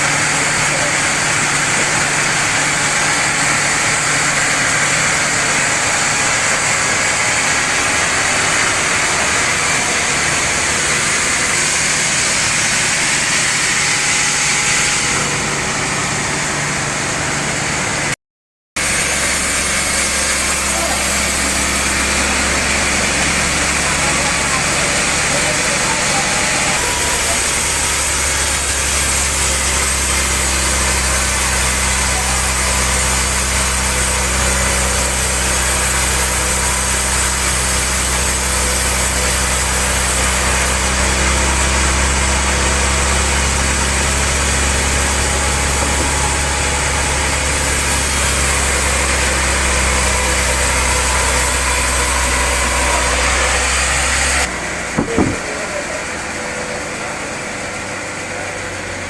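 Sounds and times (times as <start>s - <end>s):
sawmill machinery running: 0.0s - 18.2s, 18.8s - 59.0s
short knock: 55.0s - 55.7s.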